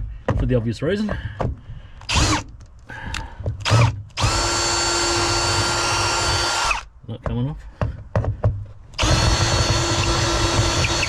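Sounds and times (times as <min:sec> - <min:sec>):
power drill running: 0:02.1 - 0:02.4, 0:03.6 - 0:06.9, 0:09.0 - 0:11.0.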